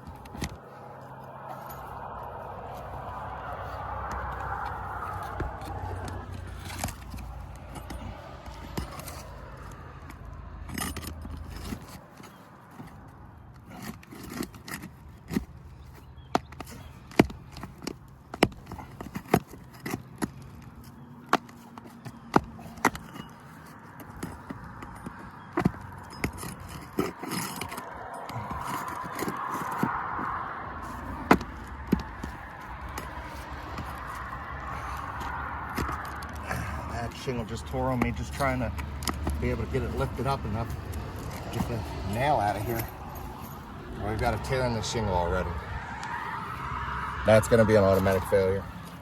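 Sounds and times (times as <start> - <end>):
metal tools tapping and scraping: 16.4 - 45.0.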